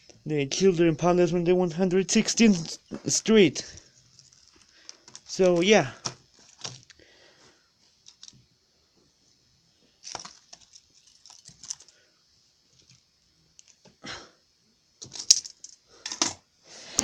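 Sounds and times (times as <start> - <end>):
small objects clicking and rustling: 2.4 - 7.0, 7.9 - 8.5, 10.0 - 12.0, 12.7 - 13.9, 15.0 - 16.4.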